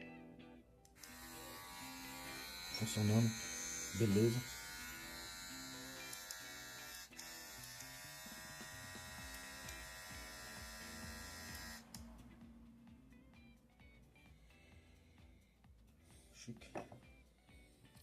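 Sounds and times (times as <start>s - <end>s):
electric hair clipper buzzing: 0.9s - 12.2s.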